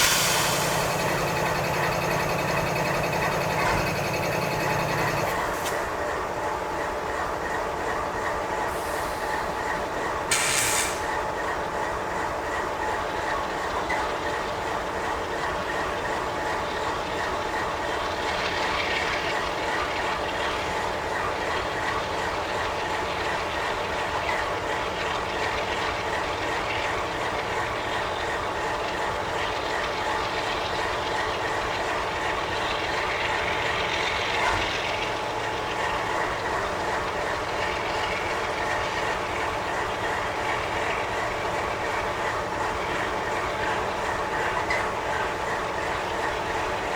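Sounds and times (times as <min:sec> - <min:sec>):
loud burst of noise: 0:00.0 - 0:05.7
train wheels rolling on rails: 0:00.0 - 0:46.9.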